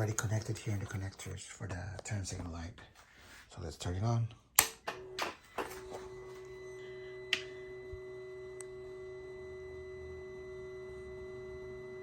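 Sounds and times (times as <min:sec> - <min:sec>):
switch click: 0:04.6 - 0:05.3
high electrical hum: 0:04.6 - 0:12.0.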